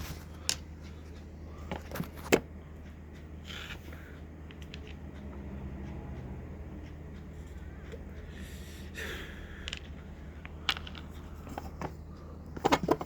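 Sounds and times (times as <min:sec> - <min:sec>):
faint handling noises: 0:00.0 - 0:05.0, 0:09.6 - 0:13.0
steady low hum: 0:00.0 - 0:13.0.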